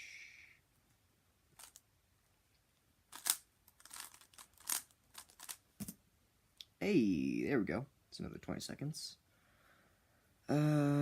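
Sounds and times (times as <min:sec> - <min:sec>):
speed cube clicking: 0:03.2 - 0:05.6.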